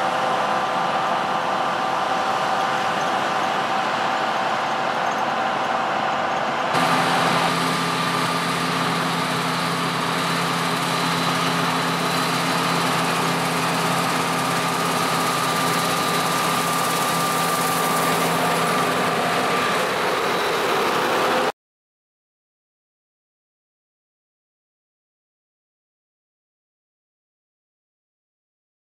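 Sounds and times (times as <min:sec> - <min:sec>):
combine harvester engine hum: 0:00.0 - 0:21.5.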